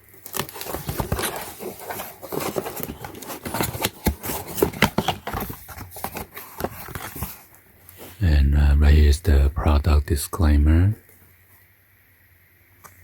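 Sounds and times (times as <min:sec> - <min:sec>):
packaging crinkling and rustling: 0:00.0 - 0:08.2.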